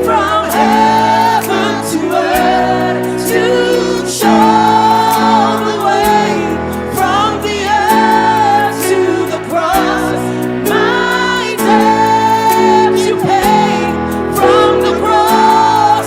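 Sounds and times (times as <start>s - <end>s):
choir singing: 0.0s - 16.0s
sustained keyboard chords: 0.0s - 16.0s.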